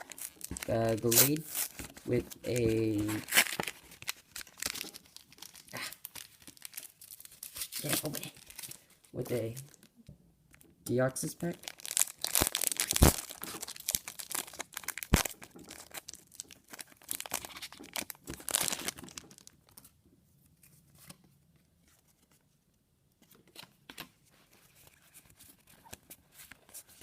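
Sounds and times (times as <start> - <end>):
foil wrapper tearing and crinkling: 0.0 - 8.8, 11.6 - 19.8.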